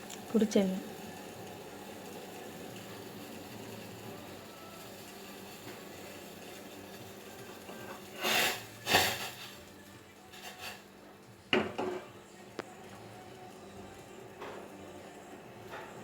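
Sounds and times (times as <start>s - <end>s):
pots and utensils clattering: 1.2s - 10.9s, 11.5s - 12.2s, 14.3s - 16.0s.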